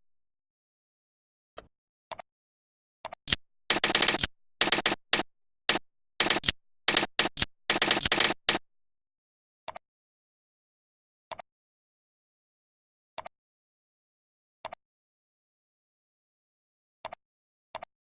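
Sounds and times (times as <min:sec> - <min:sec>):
keyboard typing clicks: 0:03.1 - 0:08.6.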